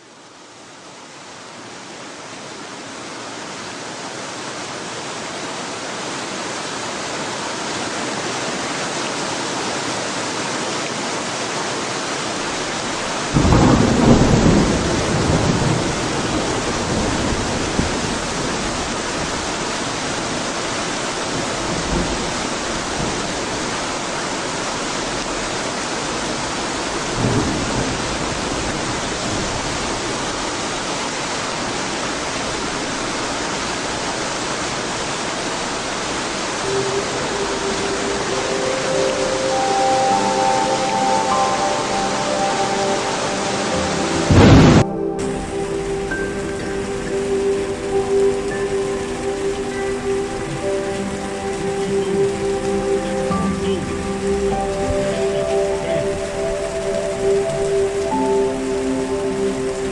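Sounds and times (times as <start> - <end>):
heavy rain: 0.0 - 59.9
thunder rumbling: 12.5 - 33.4, 35.6 - 59.9.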